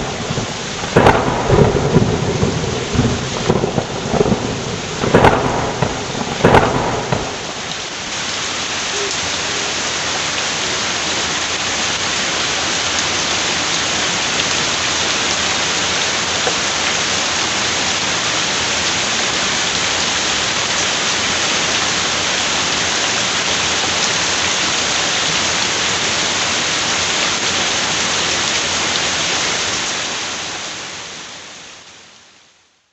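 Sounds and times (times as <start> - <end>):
thunder cracks and rumbles: 0.0 - 7.8
heavy rain pouring: 0.0 - 32.6.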